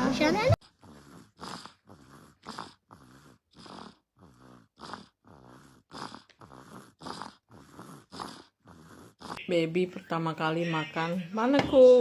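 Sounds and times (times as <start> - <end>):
dog snoring: 0.5 - 9.4.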